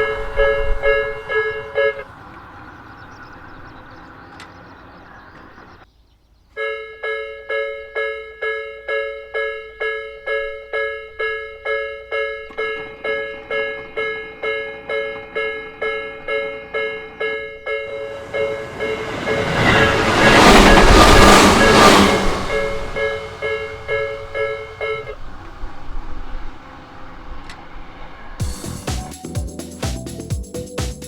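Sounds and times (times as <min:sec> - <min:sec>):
two-tone level crossing alarm: 0:00.0 - 0:05.8, 0:06.6 - 0:22.0, 0:23.0 - 0:25.2
train passing: 0:00.0 - 0:05.9, 0:08.8 - 0:29.8.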